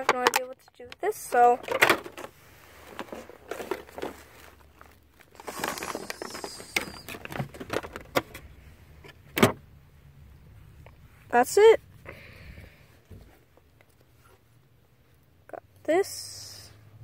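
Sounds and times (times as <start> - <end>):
toy packaging crinkling: 1.4 - 8.1.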